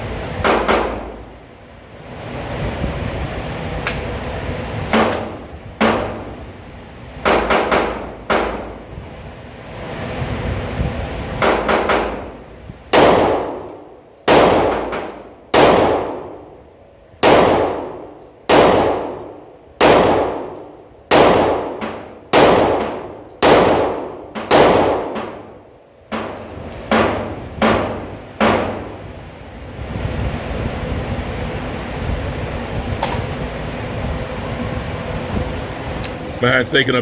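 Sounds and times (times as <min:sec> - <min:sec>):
pistol shots echoing: 0:14.3 - 0:16.4, 0:17.2 - 0:19.2, 0:19.8 - 0:28.9.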